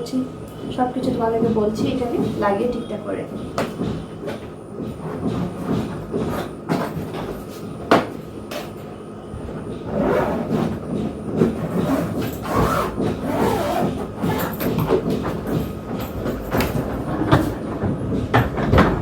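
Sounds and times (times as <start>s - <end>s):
suitcases knocking: 0.8s - 19.0s.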